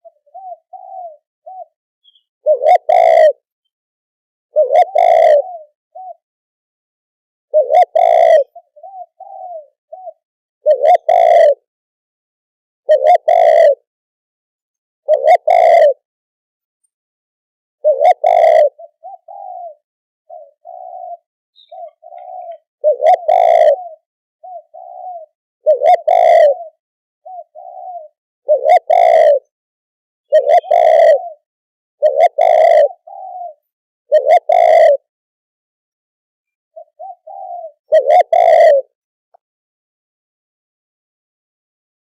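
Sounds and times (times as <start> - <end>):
dove cooing: 0.0 - 3.5, 4.5 - 6.2, 7.5 - 11.7, 12.9 - 13.9, 15.1 - 16.0, 17.8 - 29.5, 30.3 - 35.1, 36.8 - 39.0.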